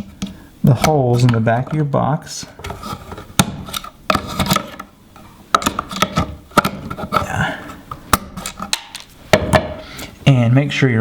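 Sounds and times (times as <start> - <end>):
knockout tabs clicking and knocking: 8.1 - 9.7.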